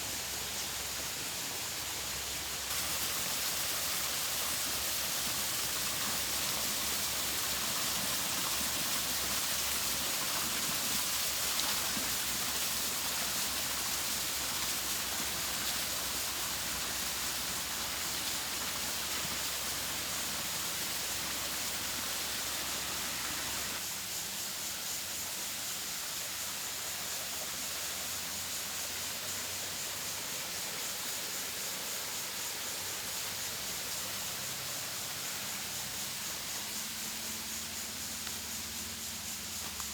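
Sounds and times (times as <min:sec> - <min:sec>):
running water splashing: 0:02.7 - 0:23.8.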